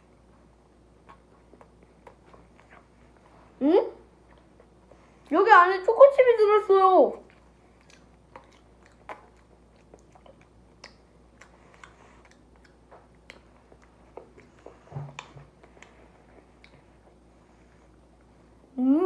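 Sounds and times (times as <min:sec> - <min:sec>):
person chewing with mouth clicks: 0:01.0 - 0:03.0, 0:07.2 - 0:17.2.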